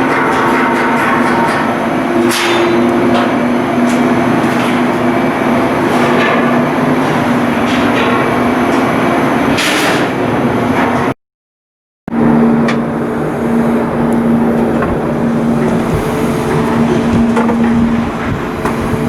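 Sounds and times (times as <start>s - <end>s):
sharp metallic clanks: 0.0s - 10.3s
loud machinery noise: 0.0s - 11.2s, 12.1s - 19.0s.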